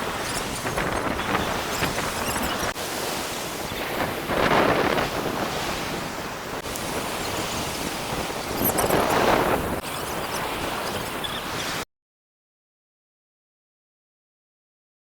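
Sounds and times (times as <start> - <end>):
wind buffeting microphone: 0.0 - 11.8
sea waves washing ashore: 0.0 - 11.9.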